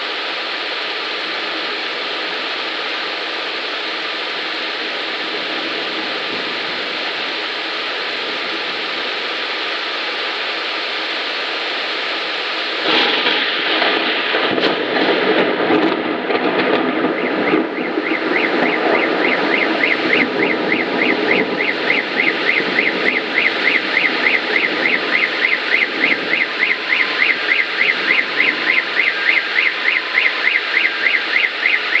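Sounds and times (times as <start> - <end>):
heavy rain pouring: 0.0 - 32.0
thunder rumbling: 4.0 - 9.6, 12.7 - 32.0
car alarm warbling siren: 16.4 - 32.0.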